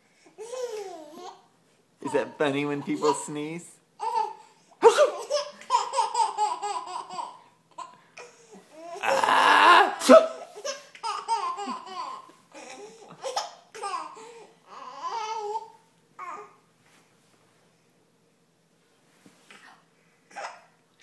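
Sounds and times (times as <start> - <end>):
baby giggling: 4.0 - 7.9, 10.3 - 15.7
loud sneeze: 4.8 - 5.3, 9.0 - 10.6.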